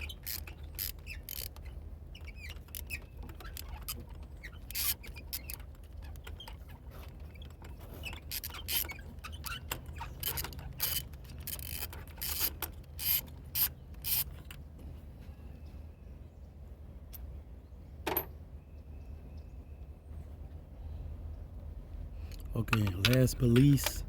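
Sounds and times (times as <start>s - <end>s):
socket ratchet clicking and rasping: 0.0s - 6.6s, 8.1s - 14.6s, 22.2s - 24.0s.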